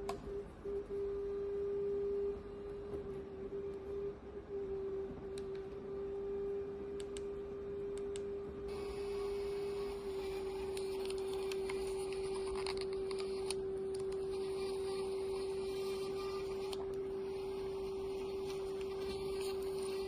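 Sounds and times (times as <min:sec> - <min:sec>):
camera motor humming: 0:08.7 - 0:20.0.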